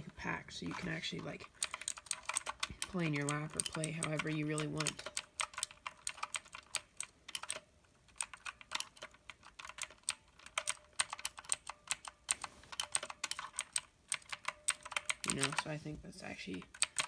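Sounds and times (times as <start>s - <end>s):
clicky keyboard keystrokes: 1.4s - 15.7s, 16.5s - 17.0s.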